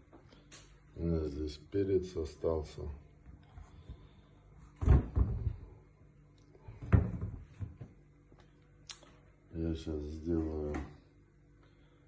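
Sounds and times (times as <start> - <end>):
cupboard door thumping: 4.8 - 5.7.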